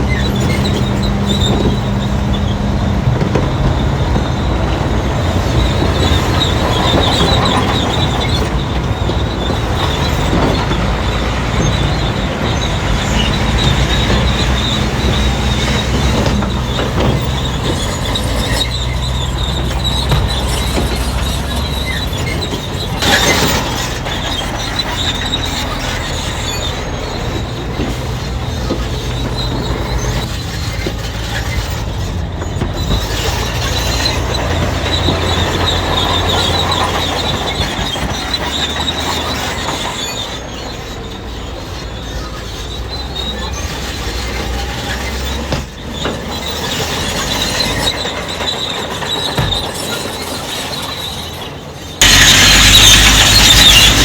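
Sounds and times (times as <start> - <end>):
bulldozer diesel engine: 0.0 - 54.0
steel tracks squealing: 0.0 - 54.0
loud clank: 52.0 - 54.0.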